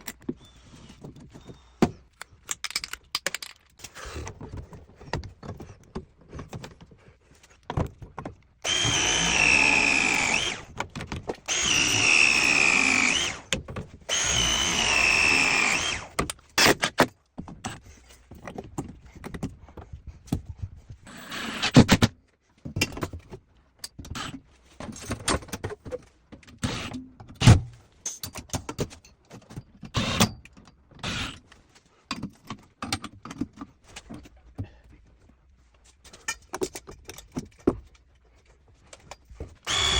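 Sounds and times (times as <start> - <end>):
tools knocking and clicking: 1.8 - 3.8, 36.1 - 37.9
cordless drill whining: 8.6 - 10.8, 11.4 - 16.2, 39.7 - 39.9.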